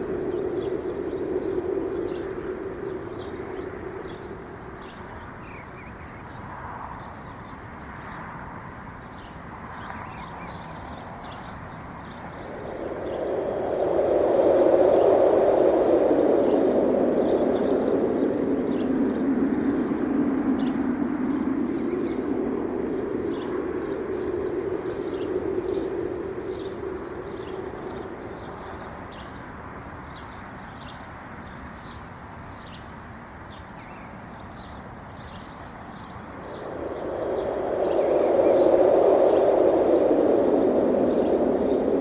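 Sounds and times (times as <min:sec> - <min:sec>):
small birds chirping: 0:00.0 - 0:42.0
wind gusting: 0:00.0 - 0:42.0.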